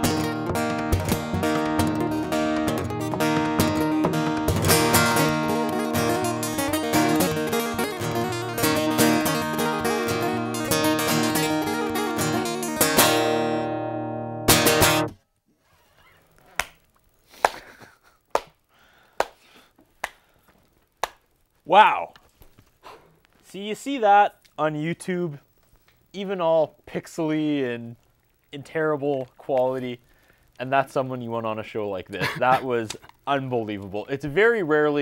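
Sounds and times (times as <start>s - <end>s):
acoustic guitar picking and strumming: 0.0s - 15.2s.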